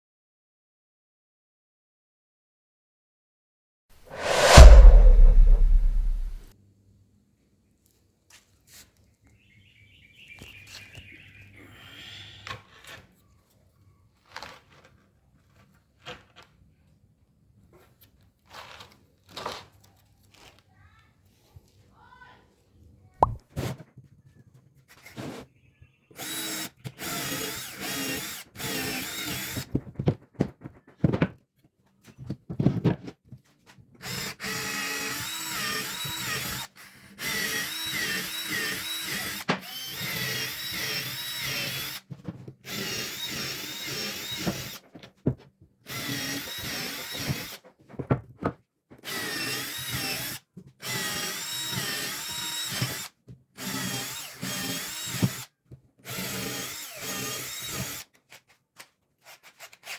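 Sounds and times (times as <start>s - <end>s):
power drill boring into wood: 26.2s - 29.7s, 34.0s - 44.8s, 45.9s - 47.6s, 49.0s - 58.2s.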